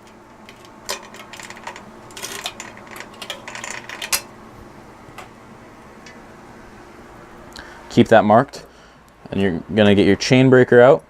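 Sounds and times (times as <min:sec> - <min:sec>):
bicycle chain clinking: 0:00.5 - 0:04.3.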